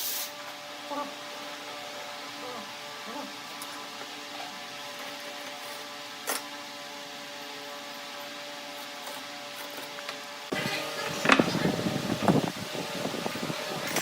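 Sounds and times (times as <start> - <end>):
steady hum of held tones: 10.4 - 14.0.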